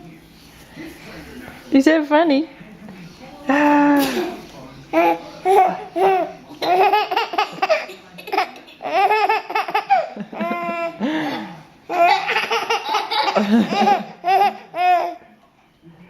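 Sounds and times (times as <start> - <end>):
baby laughing: 4.0 - 11.0, 11.9 - 15.2.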